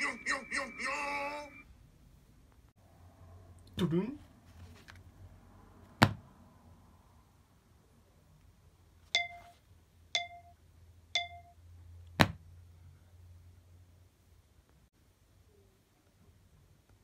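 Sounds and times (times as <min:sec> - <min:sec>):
ringing pings from struck object: 0:09.2 - 0:09.6, 0:10.2 - 0:10.6, 0:11.2 - 0:11.6.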